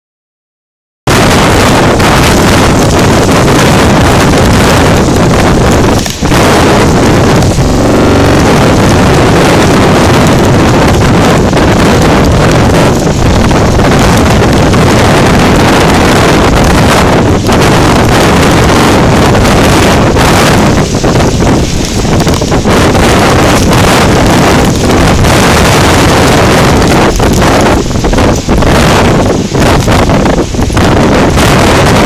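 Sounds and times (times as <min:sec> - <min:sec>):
rain and sea spray: 0:01.1 - 0:32.0
wind buffeting microphone: 0:01.1 - 0:32.0.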